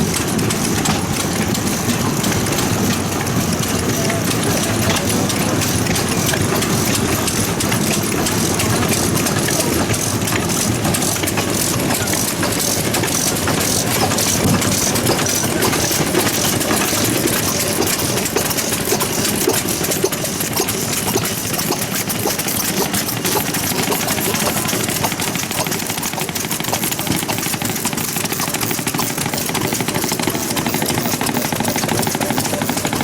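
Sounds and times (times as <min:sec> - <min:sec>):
stationary engines idling: 0:00.0 - 0:33.0.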